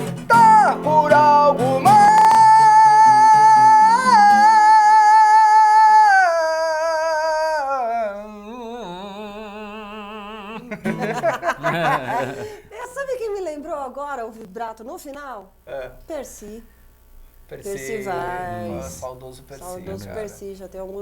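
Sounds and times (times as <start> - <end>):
electric guitar: 0.0 - 4.8
rock vocalist holding note: 0.3 - 10.8
people talking and laughing: 9.5 - 13.4.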